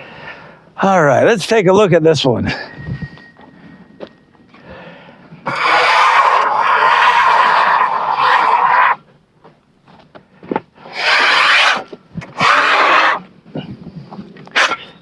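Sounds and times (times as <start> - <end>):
long harsh animal calls: 5.4 - 9.0, 10.8 - 13.3.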